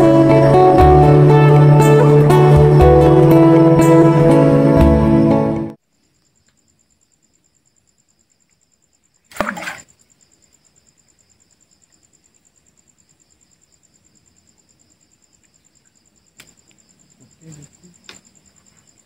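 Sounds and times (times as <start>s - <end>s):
crickets chirring: 5.8s - 19.0s.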